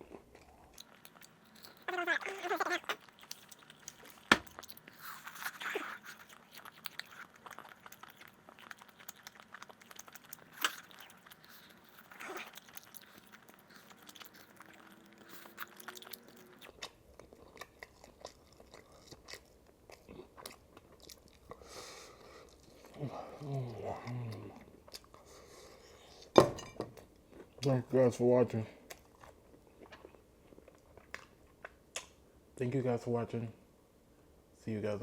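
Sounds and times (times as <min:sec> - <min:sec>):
person chewing: 0:00.0 - 0:26.3.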